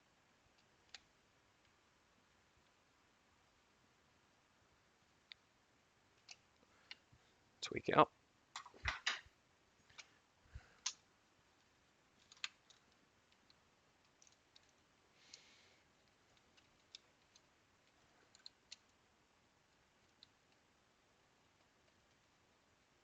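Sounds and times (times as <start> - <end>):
small plastic clicks and taps: 6.2 - 7.1, 12.2 - 15.4.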